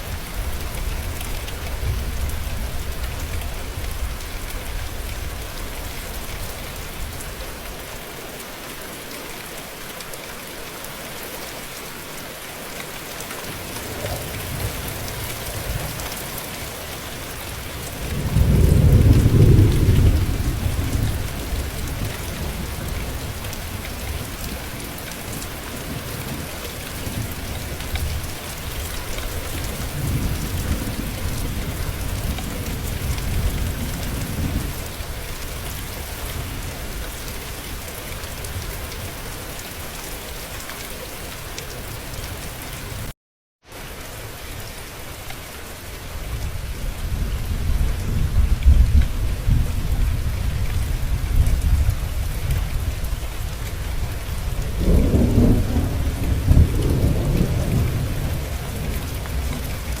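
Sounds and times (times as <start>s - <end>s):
steady rain: 0.0s - 60.0s
rolling thunder: 17.4s - 37.3s, 46.3s - 60.0s.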